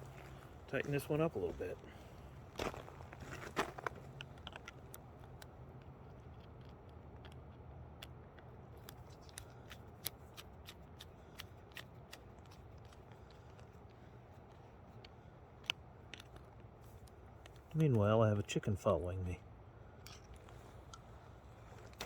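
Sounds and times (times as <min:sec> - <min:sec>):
small metal tool clicks: 0:06.3 - 0:13.7.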